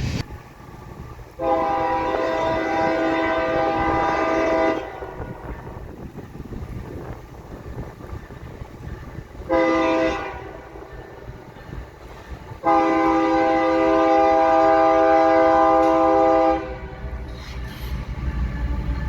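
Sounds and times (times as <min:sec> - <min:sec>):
low rumble of train: 0:00.0 - 0:19.0
locomotive air horn blasts: 0:01.4 - 0:05.5, 0:09.4 - 0:10.8, 0:12.6 - 0:17.1.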